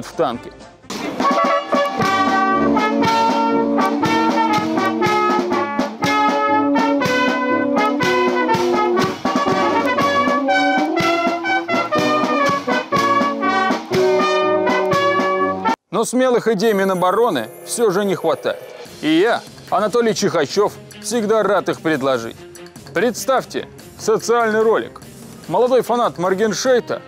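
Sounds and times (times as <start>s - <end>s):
brass band playing: 1.0s - 15.8s, 16.7s - 20.0s.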